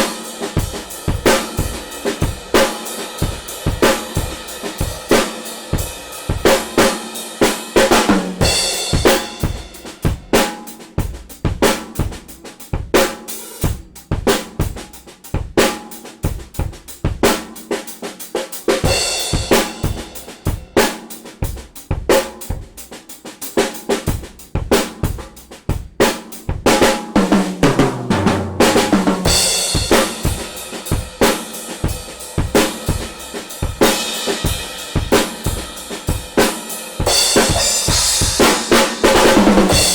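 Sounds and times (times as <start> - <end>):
drum kit groove: 0.0 - 39.9.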